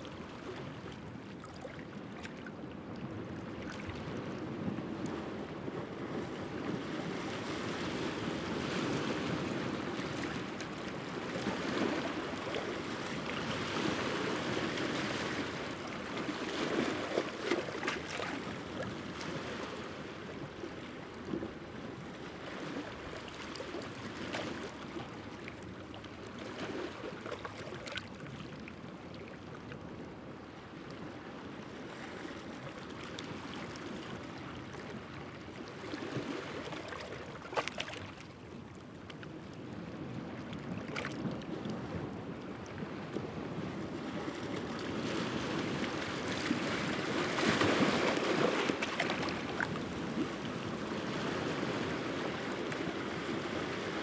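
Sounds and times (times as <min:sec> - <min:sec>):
sea waves breaking on rocks: 0:06.2 - 0:20.1, 0:42.9 - 0:54.0.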